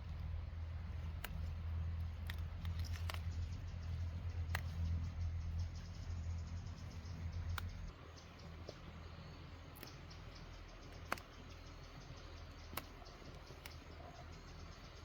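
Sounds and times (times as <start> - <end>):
low hum: 0.0 - 15.0
sharp clicks: 1.1 - 7.9, 10.8 - 11.6.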